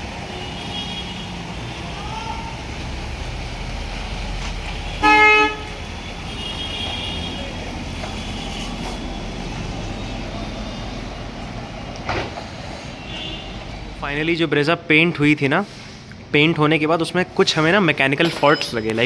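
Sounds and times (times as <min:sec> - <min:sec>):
traffic rumble: 0:00.0 - 0:19.0
vehicle horn toot: 0:00.3 - 0:01.6, 0:04.9 - 0:07.6, 0:13.0 - 0:13.7.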